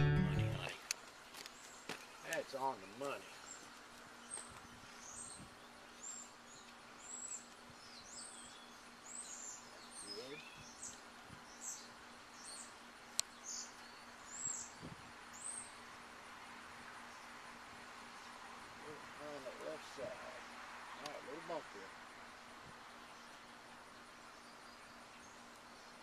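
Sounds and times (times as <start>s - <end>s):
small bird chirping: 1.0s - 15.8s.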